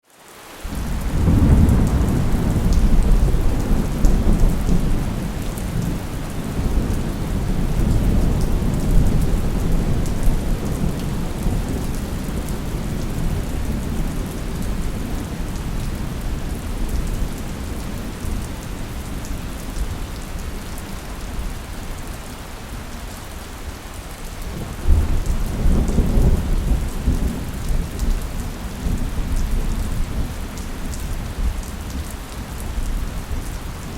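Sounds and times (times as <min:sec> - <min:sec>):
steady rain: 0:00.0 - 0:33.9
thunder rumbling: 0:00.7 - 0:19.0, 0:24.5 - 0:32.0.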